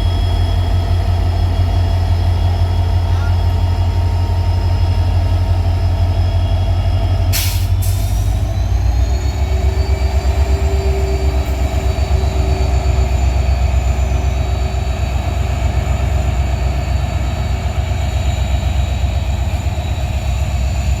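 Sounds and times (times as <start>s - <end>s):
diesel locomotive hum and rumble: 0.0s - 21.0s.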